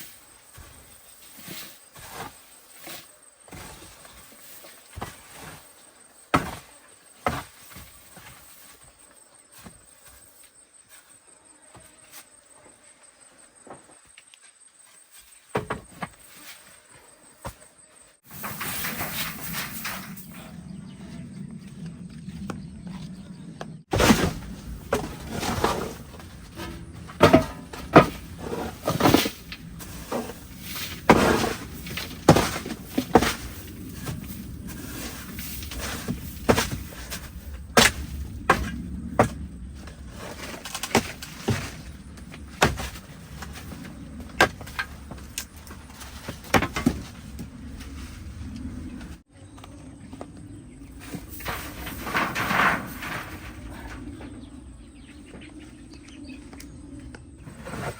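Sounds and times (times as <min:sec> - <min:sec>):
knocks and thuds: 0:23.6 - 0:34.4.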